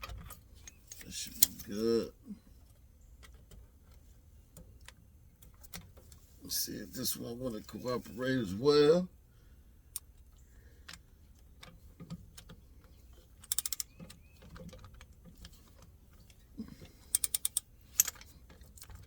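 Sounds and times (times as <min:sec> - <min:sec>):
hand ratchet clicking: 0:13.4 - 0:14.9, 0:17.0 - 0:18.2.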